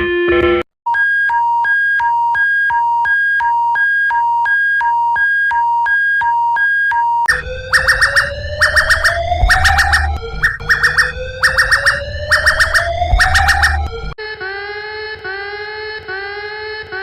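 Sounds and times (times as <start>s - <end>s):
low hum: 7.3s - 14.2s
rapid alarm chirps: 7.3s - 14.2s
slowly rising alarm tone: 7.3s - 14.2s
two-pitch alarm beep: 7.3s - 14.2s.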